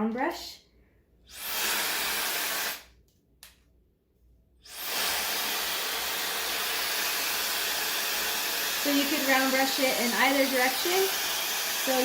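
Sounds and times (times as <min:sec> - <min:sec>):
hair dryer brush blowing air: 0:01.3 - 0:02.9, 0:04.6 - 0:12.0.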